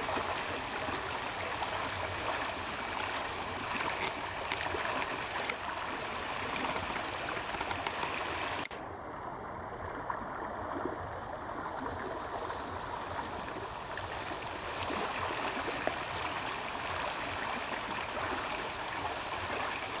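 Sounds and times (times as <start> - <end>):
faint clicks: 3.7 - 5.6, 6.5 - 8.8.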